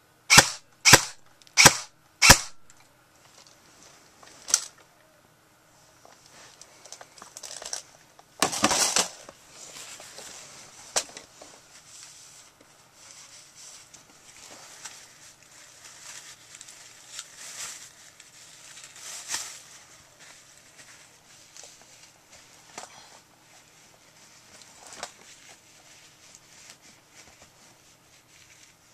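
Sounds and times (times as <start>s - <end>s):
sharp click: 0.3s - 2.8s
rustling and handling: 2.6s - 5.0s, 5.8s - 28.9s.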